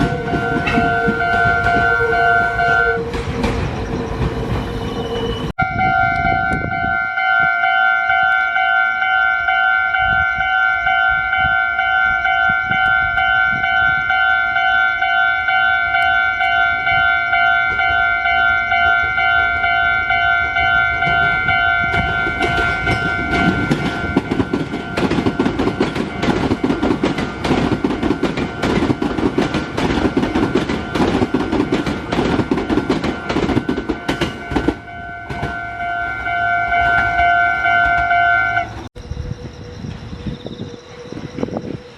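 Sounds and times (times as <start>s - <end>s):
level crossing warning bell: 0.0s - 3.1s, 5.6s - 38.9s
train wheels rolling and clattering: 0.0s - 5.5s, 16.0s - 41.9s.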